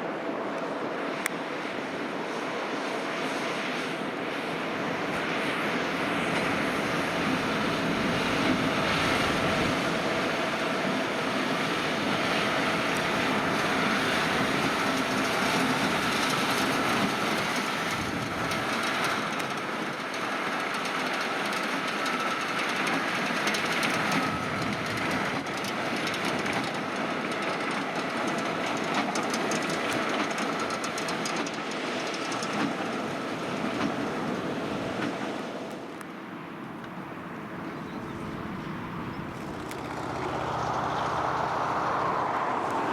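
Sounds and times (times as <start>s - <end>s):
tractor engine under load: 4.3s - 42.9s
haymaking machinery clatter: 5.9s - 35.4s.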